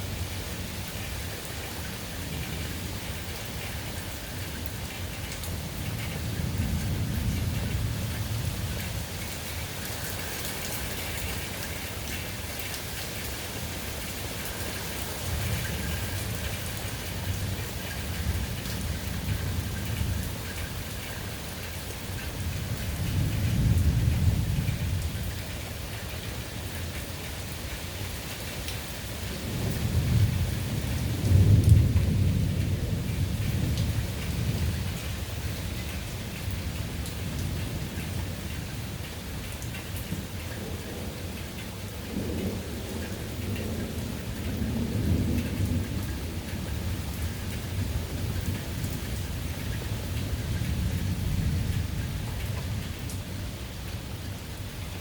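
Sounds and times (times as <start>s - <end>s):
rain falling: 0.0s - 55.0s
thunder rumble: 42.0s - 53.5s.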